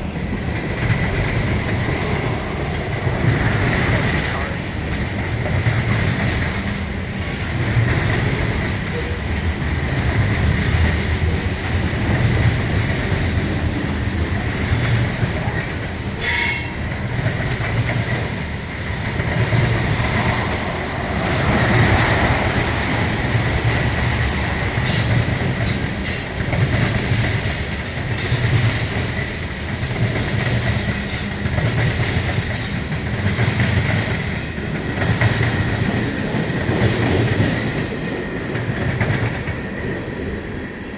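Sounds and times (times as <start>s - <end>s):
train wheels clattering: 0.0s - 40.6s.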